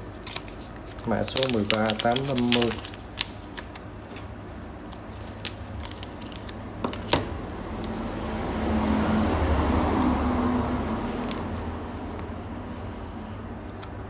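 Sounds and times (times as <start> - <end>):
passing vehicle engine rumble: 7.3 - 13.6.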